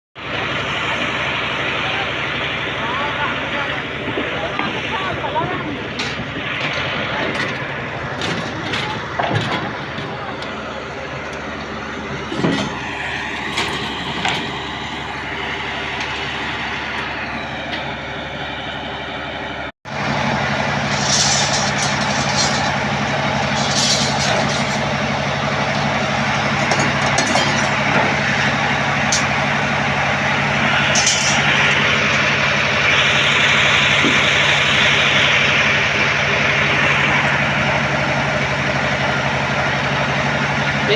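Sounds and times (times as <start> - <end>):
heavy machine engine running: 0.2 - 40.9.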